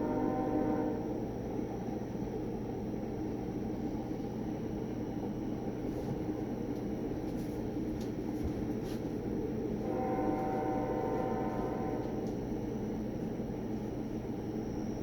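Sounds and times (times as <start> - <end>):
locomotive air horn: 0.0 - 1.1, 9.8 - 12.4
distant freight train rumble: 0.0 - 15.0.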